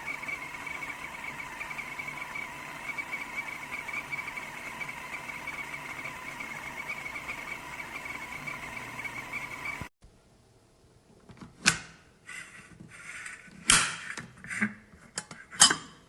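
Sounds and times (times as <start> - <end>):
kettle hissing while heating: 0.0 - 9.9.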